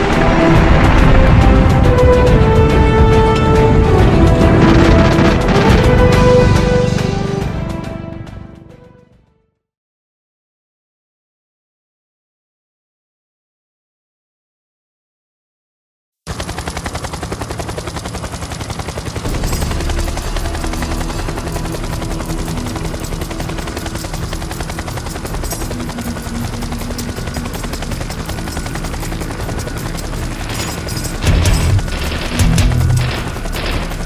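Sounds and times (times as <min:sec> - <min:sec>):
helicopter rotor chopping: 0:00.0 - 0:07.9, 0:16.3 - 0:34.0
background music: 0:00.0 - 0:09.6, 0:18.6 - 0:34.0.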